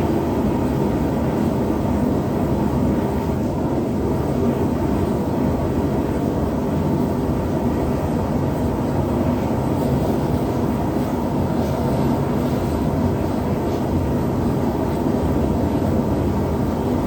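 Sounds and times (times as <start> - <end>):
gas forge burner roaring: 0.0 - 17.0.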